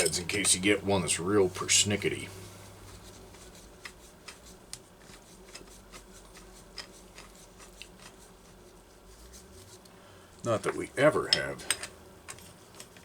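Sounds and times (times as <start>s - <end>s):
faint hum: 0.0s - 13.0s
light metal clicks and taps: 11.3s - 13.0s.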